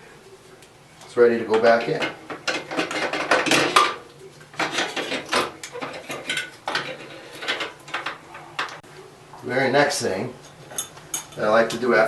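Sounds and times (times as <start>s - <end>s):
metal parts clinking and scraping: 4.6s - 8.8s.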